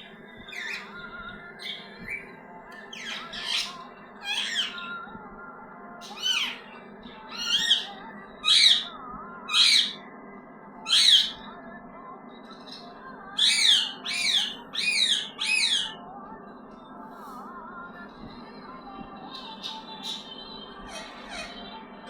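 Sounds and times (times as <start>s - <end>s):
parrot screeching: 2.9s - 4.9s, 6.0s - 6.6s, 7.3s - 8.9s, 9.5s - 10.0s, 10.9s - 11.4s, 13.4s - 16.0s.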